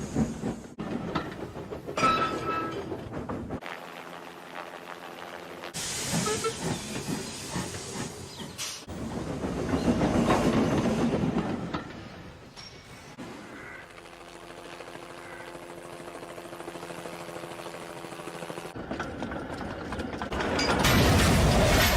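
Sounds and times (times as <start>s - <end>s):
train rumbling: 0.0s - 3.6s, 5.8s - 13.3s, 18.8s - 21.9s
steam hissing: 5.8s - 8.9s.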